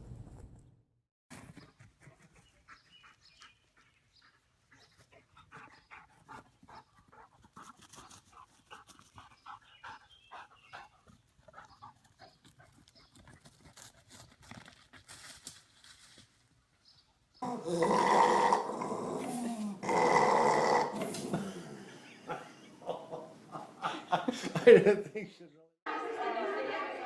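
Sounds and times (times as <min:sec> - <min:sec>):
dog panting: 0:01.8 - 0:14.3.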